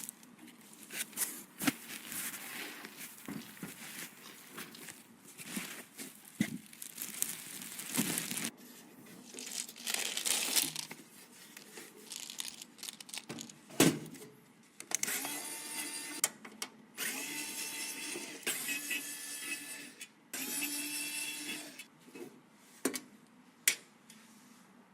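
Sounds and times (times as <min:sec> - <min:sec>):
plastic packaging crinkling: 0:00.0 - 0:08.5, 0:09.2 - 0:13.5.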